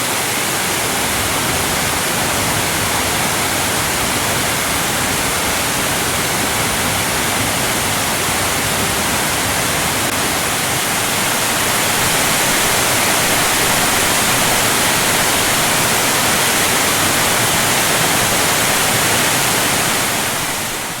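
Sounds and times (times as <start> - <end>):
waterfall pouring: 10.2 - 21.0.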